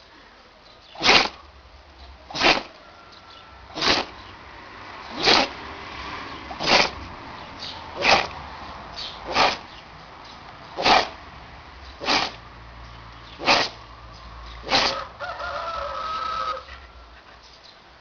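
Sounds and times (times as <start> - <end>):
animal sneezing: 1.0 - 1.5, 2.3 - 2.8, 3.7 - 4.3, 5.1 - 5.6, 6.5 - 7.0, 8.0 - 8.4, 9.2 - 9.8, 10.8 - 11.2, 12.0 - 12.4, 13.4 - 13.8, 14.6 - 15.0
held pitched animal call: 2.3 - 4.3, 5.1 - 5.6, 13.4 - 13.8, 14.6 - 17.4.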